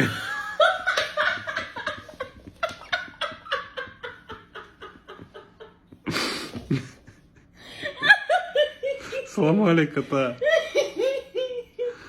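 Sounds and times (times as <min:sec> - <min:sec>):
person laughing: 0:00.0 - 0:09.3.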